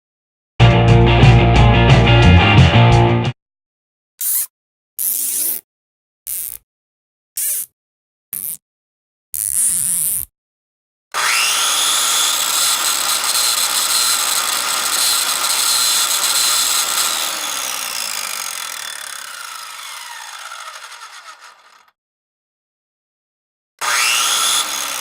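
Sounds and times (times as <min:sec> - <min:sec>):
power tool motor whining: 0:11.2 - 0:21.9, 0:23.8 - 0:25.0.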